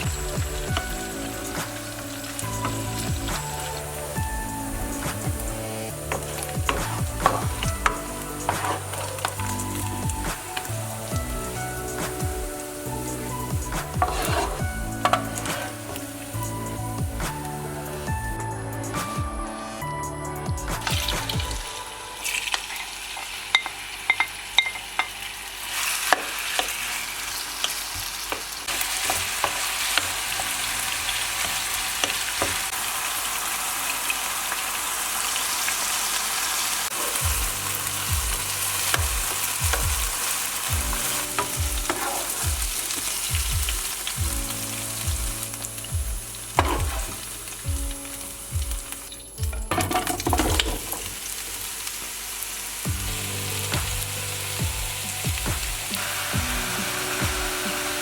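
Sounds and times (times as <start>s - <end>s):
chicken sizzling in a frying pan: 0.0s - 18.1s, 20.8s - 58.0s
spatula scraping a pan: 6.2s - 9.5s, 13.8s - 16.0s, 40.2s - 43.2s, 46.6s - 47.3s.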